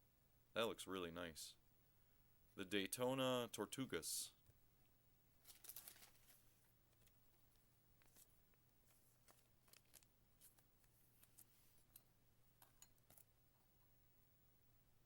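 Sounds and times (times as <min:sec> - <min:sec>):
faint steady hum: 0:00.0 - 0:15.0
cards clicking and rustling: 0:05.4 - 0:11.9.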